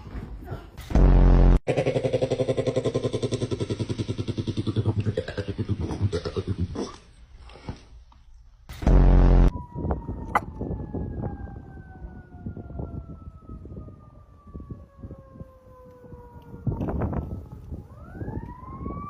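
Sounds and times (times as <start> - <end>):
siren wailing: 8.8 - 19.0.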